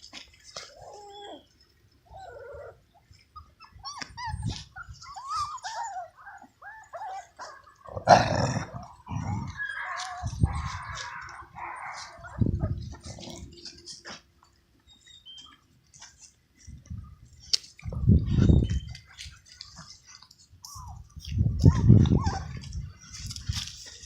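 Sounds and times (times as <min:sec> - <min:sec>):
puppies whining and yipping: 0:00.4 - 0:07.9, 0:08.8 - 0:24.0.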